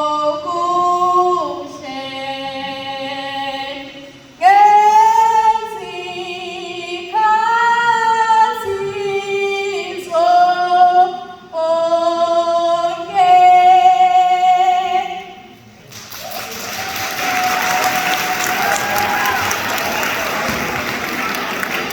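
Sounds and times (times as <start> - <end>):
woman singing unaccompanied: 0.0 - 15.5
crowd noise: 0.7 - 21.9
applause: 15.8 - 21.9.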